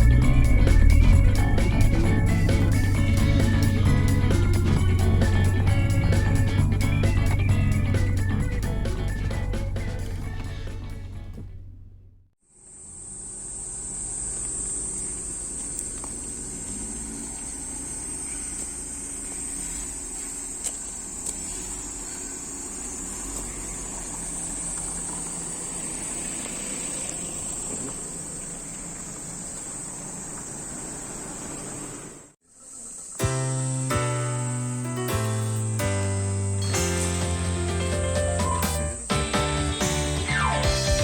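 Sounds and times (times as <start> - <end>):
low rumble: 0.0 - 12.3
insect chorus shrilling: 12.6 - 41.0.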